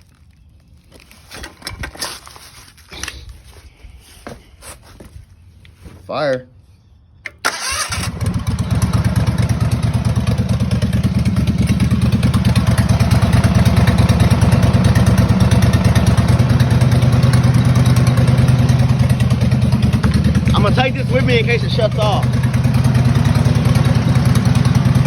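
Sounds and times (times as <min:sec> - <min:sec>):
lawn mower engine running: 0:07.3 - 0:25.0.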